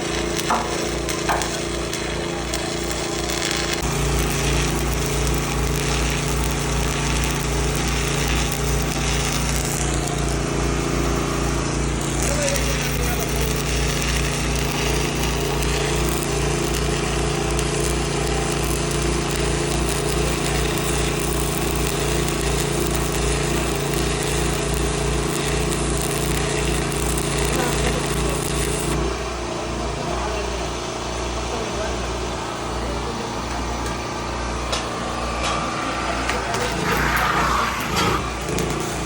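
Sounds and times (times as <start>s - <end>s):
welding arc crackle and hiss: 0.0s - 29.2s, 33.0s - 39.0s
welding machine hum: 0.0s - 39.0s.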